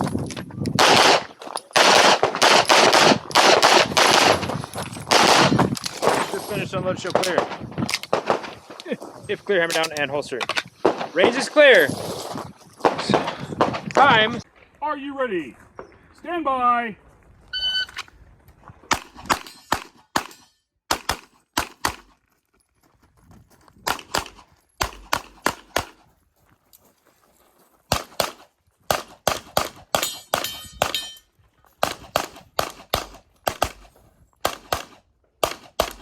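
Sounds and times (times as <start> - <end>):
handgun shots: 18.9 - 22.1, 23.9 - 26.0, 27.9 - 31.2, 31.8 - 36.0
metallic ring: 30.1 - 31.3.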